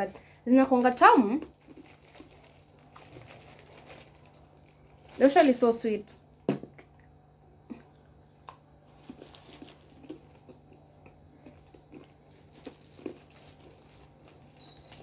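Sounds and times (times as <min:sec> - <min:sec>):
crunching and chewing nuts: 0:00.0 - 0:05.5, 0:06.3 - 0:15.0
light crinkles: 0:00.0 - 0:05.8, 0:08.8 - 0:10.7, 0:11.4 - 0:15.0.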